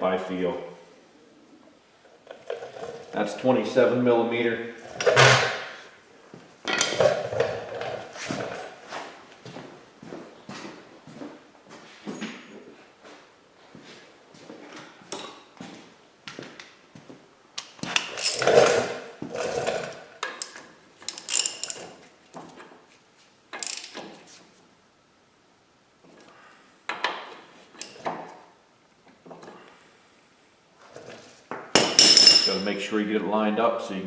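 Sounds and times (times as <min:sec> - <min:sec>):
socket wrench clicking and clanking: 0:17.6 - 0:19.0, 0:19.7 - 0:22.0, 0:23.6 - 0:24.1, 0:31.8 - 0:32.6.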